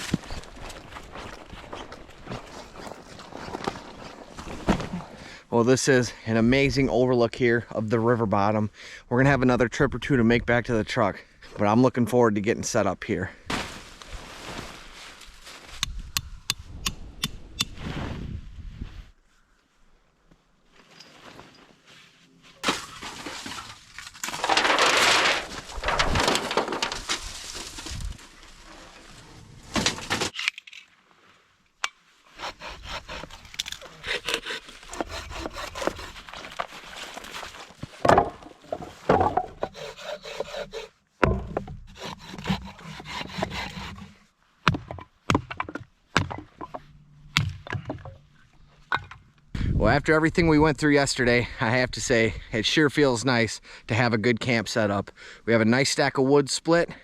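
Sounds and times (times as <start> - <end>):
wood cracking and scraping: 0.0 - 5.2, 22.6 - 30.9, 32.4 - 49.2
sawing wood: 32.3 - 37.7, 39.1 - 44.3.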